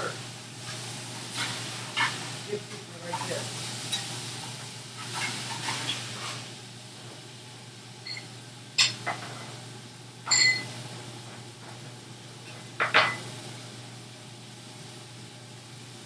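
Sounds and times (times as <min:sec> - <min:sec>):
metal utensil clinking on pan: 0:10.3 - 0:10.7.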